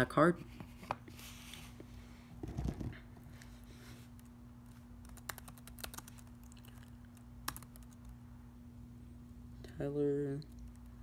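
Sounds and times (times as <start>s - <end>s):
steady low hum: 0.0s - 11.0s
typing on a computer keyboard: 5.0s - 8.1s.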